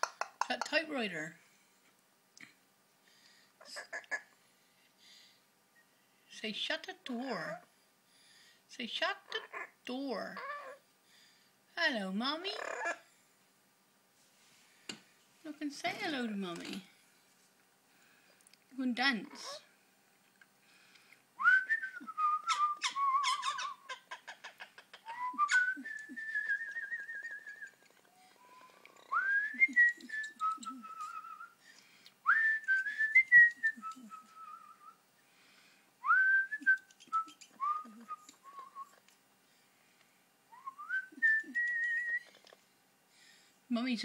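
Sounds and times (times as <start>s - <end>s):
person whistling: 28.3s - 31.5s, 32.3s - 34.9s, 36.0s - 38.9s.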